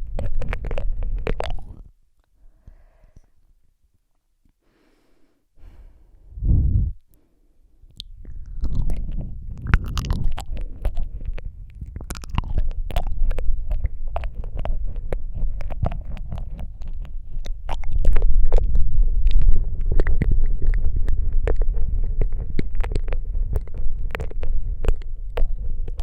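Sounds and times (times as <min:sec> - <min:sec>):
wet mouth sounds: 0:00.0 - 0:02.0, 0:07.8 - 0:26.0
lip smacks and tongue clicks: 0:00.0 - 0:02.3, 0:07.8 - 0:26.0
low rumble: 0:06.1 - 0:26.0.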